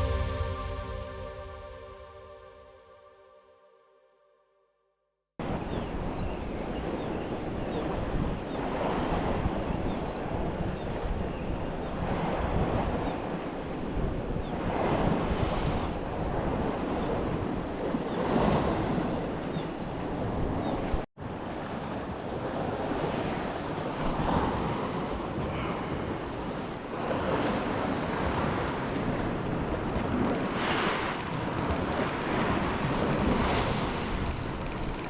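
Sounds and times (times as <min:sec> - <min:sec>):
sea waves washing in: 0:00.0 - 0:03.2, 0:21.3 - 0:35.0.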